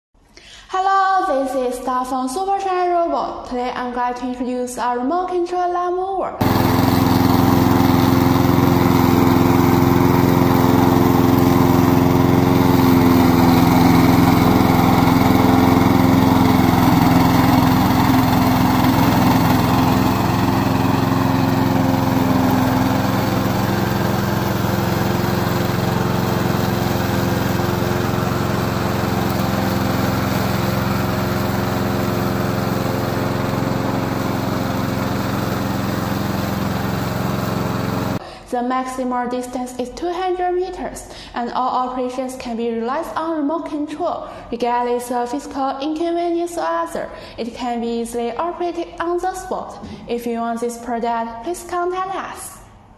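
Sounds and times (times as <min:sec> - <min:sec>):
lawn mower engine running: 0:06.4 - 0:38.2.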